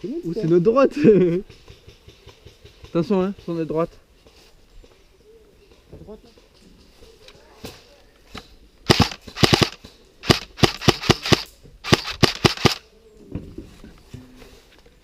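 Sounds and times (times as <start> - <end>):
airsoft rifle rapid shots: 8.9 - 12.8.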